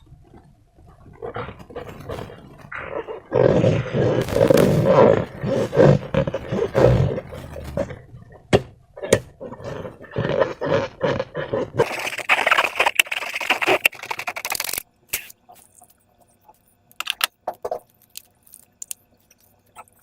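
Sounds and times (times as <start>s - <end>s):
slime and balloons squeezed by hand: 11.8s - 15.3s.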